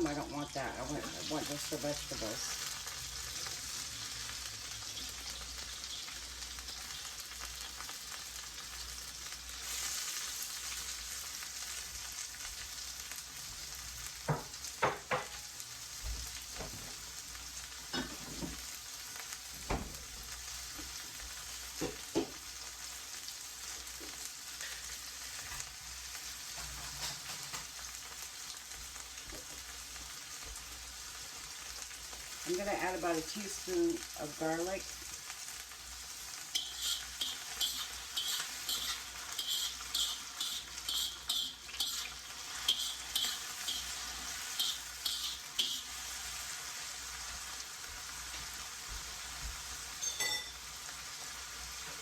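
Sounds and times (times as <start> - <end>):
vegetables sizzling in a wok: 0.0 - 52.0
utensil knocking against wok: 14.3 - 15.4, 36.6 - 42.1, 42.7 - 44.0, 44.6 - 45.8.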